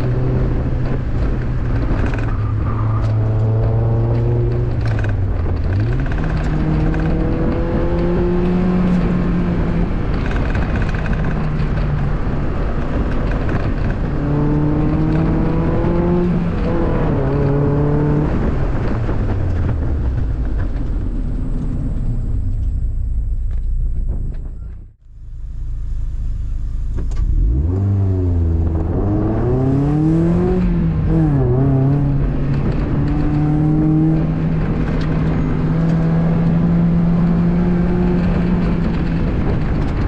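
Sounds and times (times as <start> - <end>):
car engine accelerating: 0.0 - 40.0.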